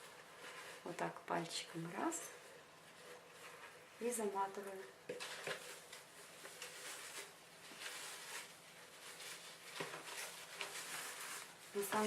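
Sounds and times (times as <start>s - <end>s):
tinsel rustling and crinkling: 0.0s - 12.0s.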